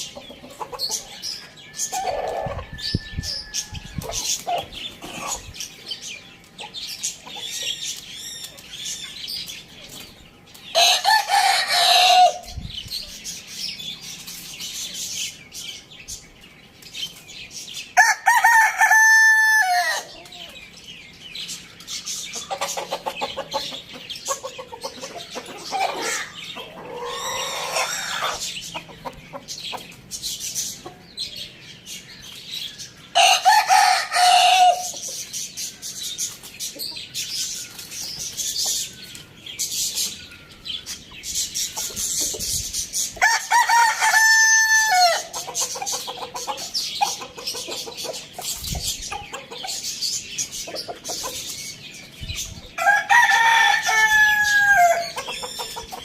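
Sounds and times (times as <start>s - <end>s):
chickens clucking: 0.0s - 56.0s
rooster crowing: 18.0s - 20.1s, 33.2s - 34.9s, 43.2s - 45.3s, 52.8s - 55.2s.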